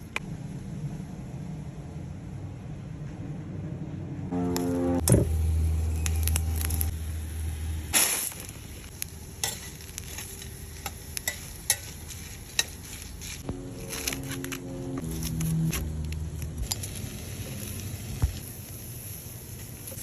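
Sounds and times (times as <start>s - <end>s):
low hum: 0.0s - 11.3s, 13.4s - 18.5s
food sizzling in a pan: 7.9s - 13.4s
sharp pops and crackles: 7.9s - 13.6s.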